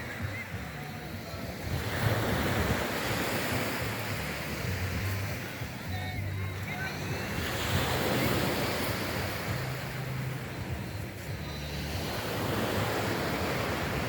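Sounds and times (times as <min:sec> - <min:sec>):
sea waves breaking on shore: 0:00.0 - 0:14.0
wind on microphone: 0:00.0 - 0:14.0.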